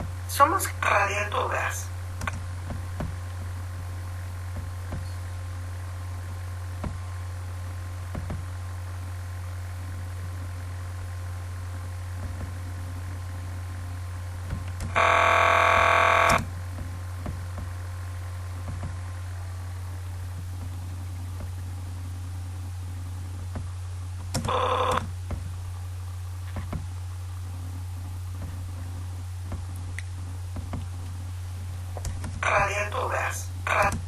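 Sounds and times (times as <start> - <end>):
low electrical hum: 0.0 - 34.0
loud electronic buzz: 14.8 - 16.7, 24.4 - 25.1, 32.4 - 34.0.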